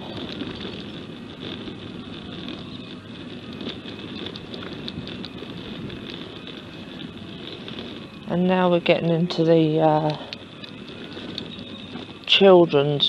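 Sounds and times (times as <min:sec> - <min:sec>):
faint crackles and ticks: 0:00.0 - 0:13.0
outdoor background noise: 0:00.0 - 0:13.0.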